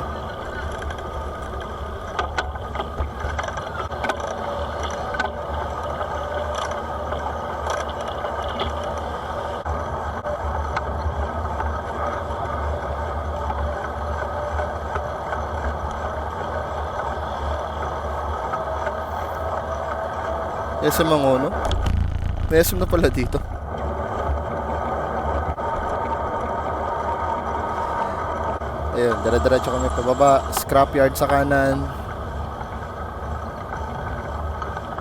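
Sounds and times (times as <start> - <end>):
wind rumbling on microphone: 17.2 - 29.0.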